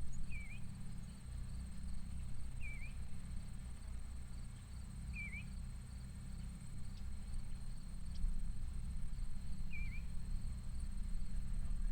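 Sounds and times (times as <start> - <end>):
faint high insect chirping: 0.0 - 11.9
small bird chirping: 0.1 - 1.2, 2.6 - 3.0, 9.7 - 10.1.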